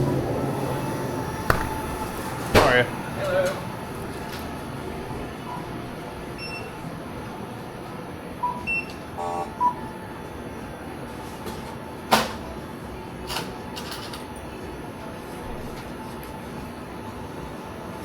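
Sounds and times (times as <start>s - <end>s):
steady store hum: 0.0s - 18.0s
sharp knock: 1.5s - 2.8s.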